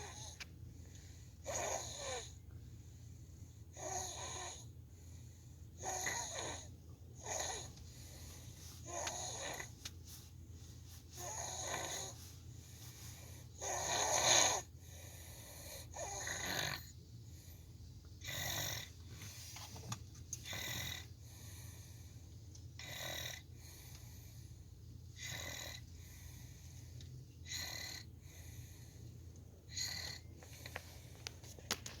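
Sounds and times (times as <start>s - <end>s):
steady low hum: 0.0s - 32.0s
girl snoring: 1.5s - 2.3s, 3.8s - 4.6s, 5.8s - 7.7s, 8.9s - 9.7s, 11.2s - 12.2s, 13.6s - 14.7s, 15.8s - 16.9s.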